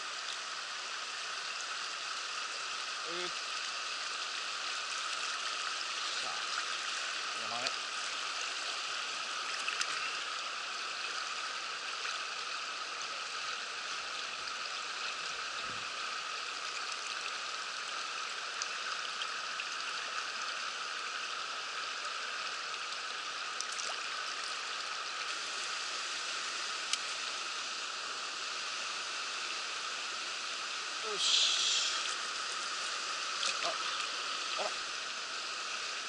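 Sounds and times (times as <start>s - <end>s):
stream rushing over rocks: 25.3s - 36.0s.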